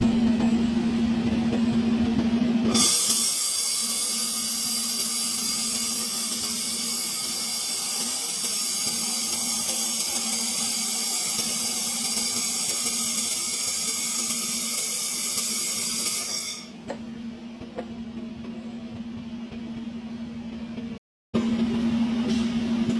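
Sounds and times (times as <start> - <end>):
welding arc hissing and crackling: 2.7 - 16.7.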